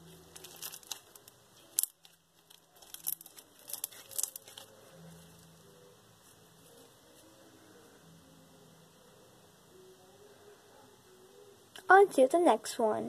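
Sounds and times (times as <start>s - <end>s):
foam bead slime crunching: 0.0s - 5.7s
faint steady hum: 0.0s - 13.0s.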